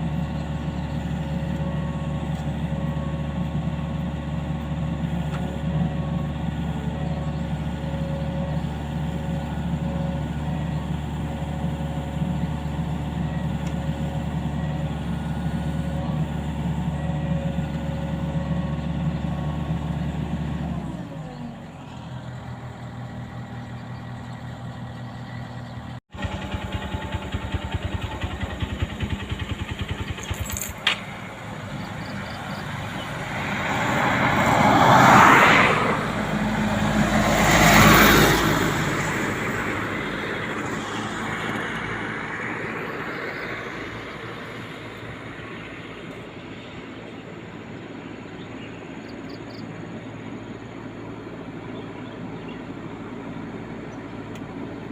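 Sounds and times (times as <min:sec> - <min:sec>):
engine idling with rhythmic pulse: 0:00.0 - 0:33.3, 0:38.8 - 0:54.9
vehicle engine running: 0:00.0 - 0:54.9.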